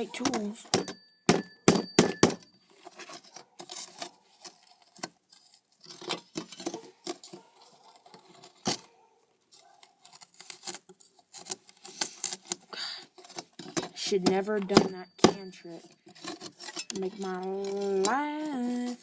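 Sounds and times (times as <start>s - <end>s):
metal tools clinking and scraping: 0.0s - 19.0s
sharp metal knock: 0.7s - 2.5s.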